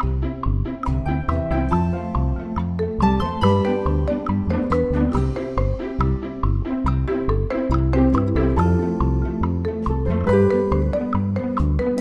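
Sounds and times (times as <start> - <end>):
mallet percussion melody: 0.0 - 12.0.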